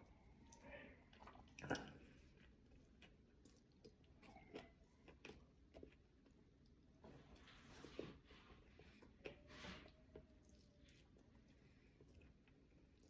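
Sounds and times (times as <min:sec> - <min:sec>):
chewing mouth clicks and smacks: 0:02.6 - 0:06.8.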